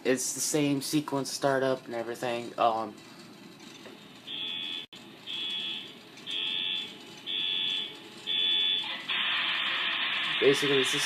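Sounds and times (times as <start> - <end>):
electronic warning beeps: 4.0 - 9.0.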